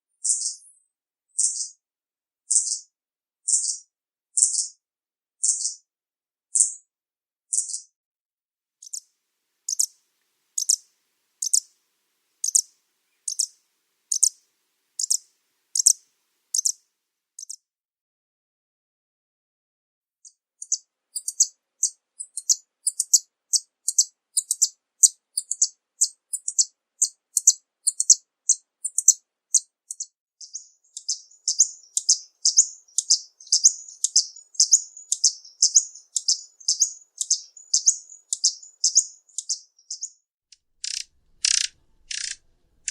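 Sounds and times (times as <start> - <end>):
hummingbird chip notes: 30.4 - 40.1.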